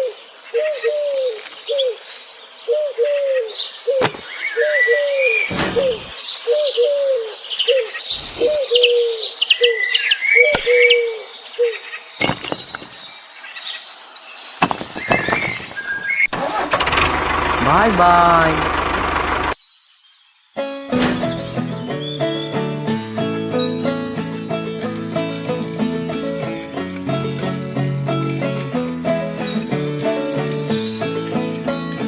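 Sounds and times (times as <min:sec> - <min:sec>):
birds calling: 0:00.0 - 0:16.3, 0:17.7 - 0:32.0
sharp knocks: 0:04.0 - 0:04.3, 0:05.5 - 0:06.2, 0:14.6 - 0:15.9, 0:20.9 - 0:22.3
higher bird chirps and whistles: 0:07.6 - 0:13.2, 0:29.4 - 0:31.4.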